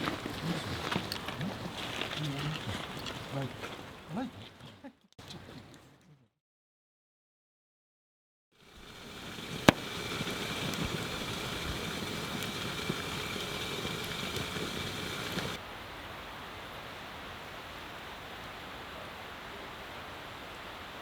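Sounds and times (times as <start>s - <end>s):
bonfire crackling and hissing: 0.0s - 5.8s, 8.6s - 21.0s
sharp pop of burning wood: 8.8s - 15.6s.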